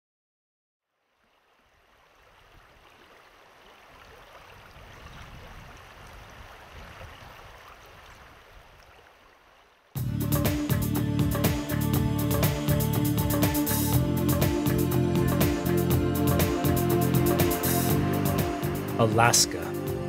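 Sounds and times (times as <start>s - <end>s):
rushing river water: 1.1s - 10.0s
music: 10.0s - 20.0s.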